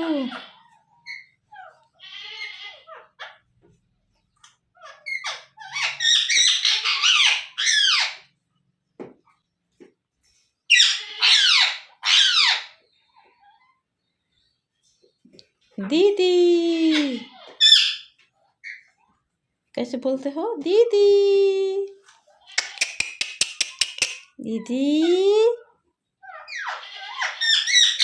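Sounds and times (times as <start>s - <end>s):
parakeet screeching: 0.0s - 3.4s, 4.8s - 8.3s, 10.7s - 12.8s, 16.9s - 18.9s, 26.2s - 28.0s
parakeet scratchy chatter: 0.0s - 3.5s, 4.8s - 8.3s, 10.7s - 13.6s, 16.9s - 19.0s, 22.3s - 24.4s, 26.2s - 28.0s.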